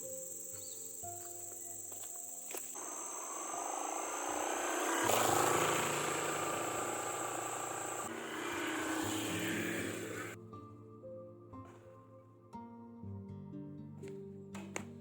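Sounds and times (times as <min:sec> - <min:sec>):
high buzz of insects: 0:00.0 - 0:10.4
small engine running: 0:02.7 - 0:10.4.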